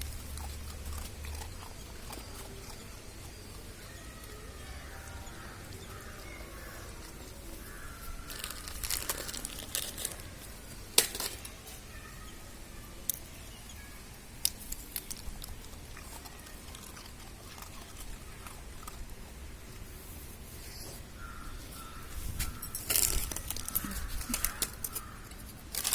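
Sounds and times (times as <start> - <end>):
puppies whining: 0.0 - 7.7
rustling and crinkling: 0.0 - 12.0, 14.4 - 25.9.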